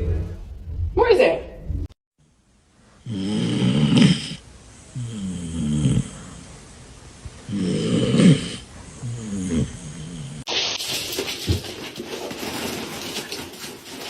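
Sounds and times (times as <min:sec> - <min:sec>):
dog snoring: 0:03.0 - 0:06.5, 0:07.4 - 0:10.5.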